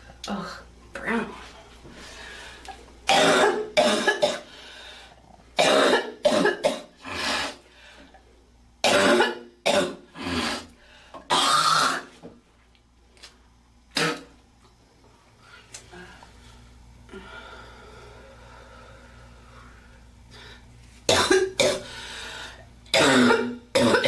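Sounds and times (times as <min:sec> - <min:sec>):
girl coughing: 0:03.1 - 0:04.5, 0:05.6 - 0:06.9, 0:21.1 - 0:21.9, 0:23.0 - 0:24.0.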